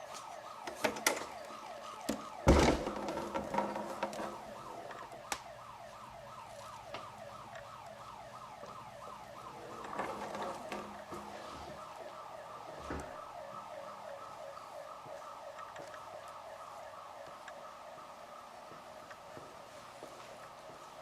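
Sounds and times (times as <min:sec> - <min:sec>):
electronic alarm siren wailing: 0:00.0 - 0:19.5
loud thump: 0:02.5 - 0:03.0.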